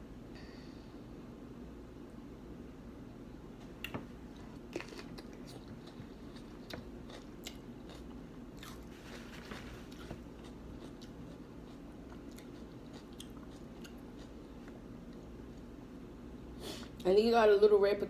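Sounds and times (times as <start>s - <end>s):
person chewing food: 3.8s - 15.7s
crisp crunches: 7.9s - 10.5s.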